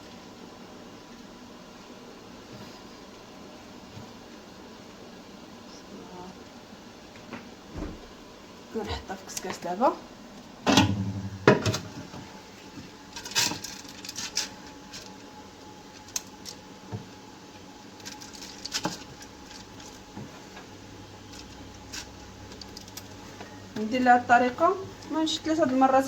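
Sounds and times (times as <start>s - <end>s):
noodles pattering in metal pot: 13.1s - 17.2s, 17.9s - 26.0s.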